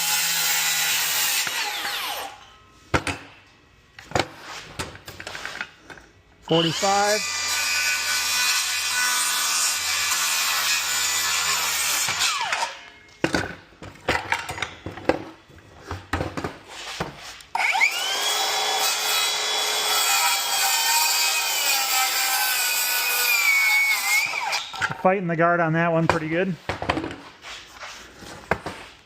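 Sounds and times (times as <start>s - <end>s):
circular saw cutting wood: 0.0s - 2.4s, 6.5s - 12.8s, 17.5s - 24.8s.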